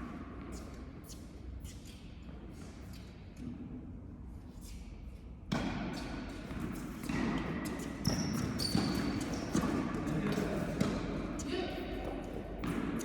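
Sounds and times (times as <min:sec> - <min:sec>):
balls bouncing on indoor court: 0:05.4 - 0:13.0
tennis balls hitting racquets: 0:05.5 - 0:11.4, 0:12.4 - 0:13.0.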